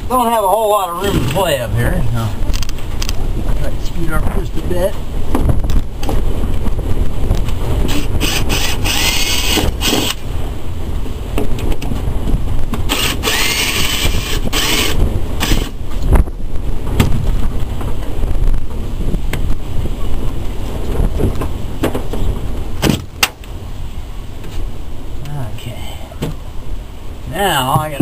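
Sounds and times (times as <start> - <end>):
wind buffeting microphone: 0.0 - 28.0
cordless drill whining: 7.9 - 10.2, 12.9 - 15.8.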